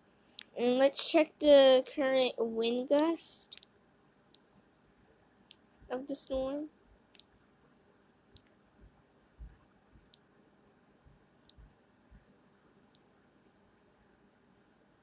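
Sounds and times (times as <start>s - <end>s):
computer mouse clicking: 9.4s - 10.3s.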